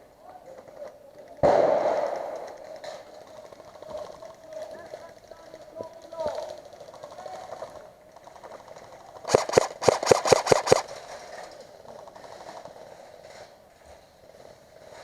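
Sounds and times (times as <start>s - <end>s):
airsoft gun shots: 9.3s - 10.9s.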